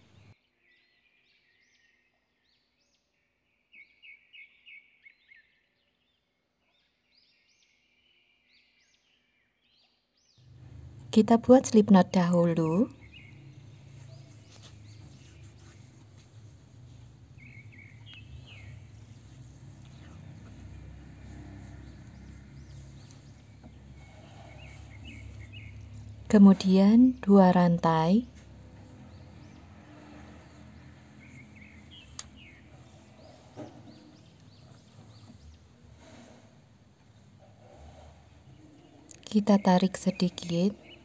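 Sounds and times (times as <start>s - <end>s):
faint bird chirps: 0.0s - 36.3s
low hum: 10.5s - 37.2s.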